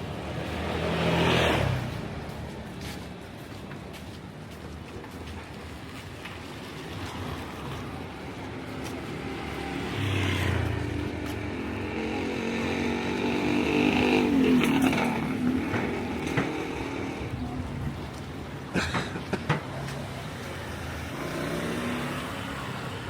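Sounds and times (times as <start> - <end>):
vehicle engine passing: 8.8 - 17.8.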